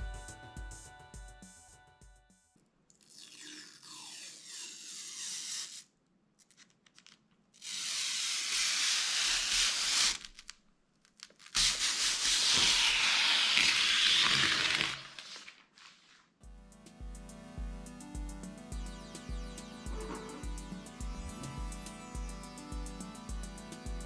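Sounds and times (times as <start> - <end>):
packaging being torn open: 12.8 - 15.7.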